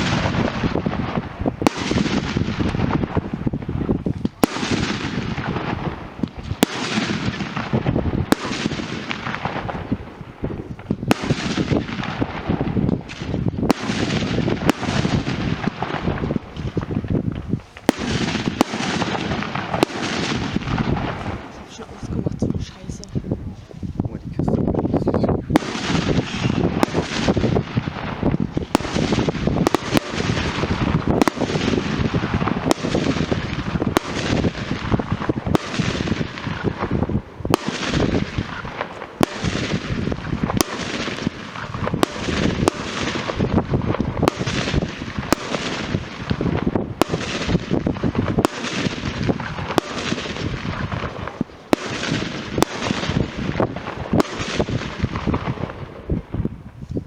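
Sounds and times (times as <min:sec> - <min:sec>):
fireworks crackling and banging: 0:00.0 - 0:57.0.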